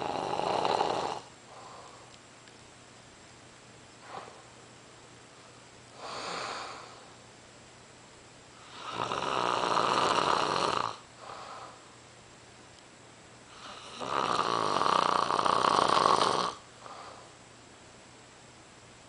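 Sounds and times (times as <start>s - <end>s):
person snoring: 0.0s - 1.8s, 6.0s - 7.1s, 8.6s - 11.8s, 13.5s - 17.3s
soft breath: 1.4s - 2.2s, 4.0s - 4.6s, 5.4s - 7.2s, 11.2s - 12.0s, 16.8s - 17.4s.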